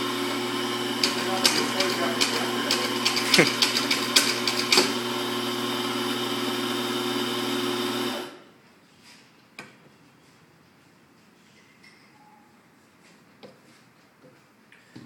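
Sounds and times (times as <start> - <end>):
coffee grinder motor whirring: 0.0 - 8.4.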